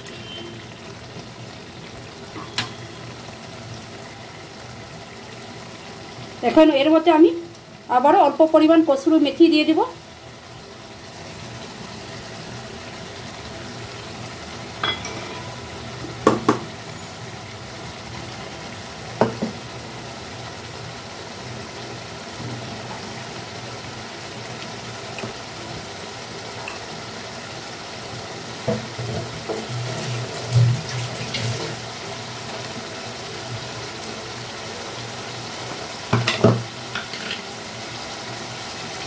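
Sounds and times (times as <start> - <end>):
food sizzling in oil: 0.0 - 39.0
spoon knocking against pan: 16.2 - 16.7, 19.2 - 19.6, 36.1 - 37.2.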